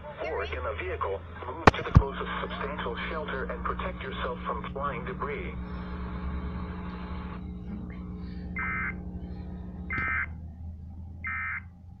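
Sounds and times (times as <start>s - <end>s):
radio hiss: 0.4s - 9.1s.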